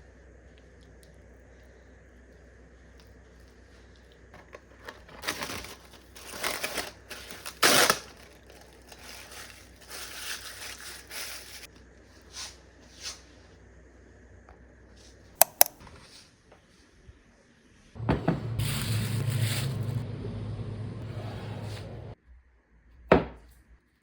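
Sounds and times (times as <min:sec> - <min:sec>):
crinkling and rustling: 0:03.8 - 0:11.7.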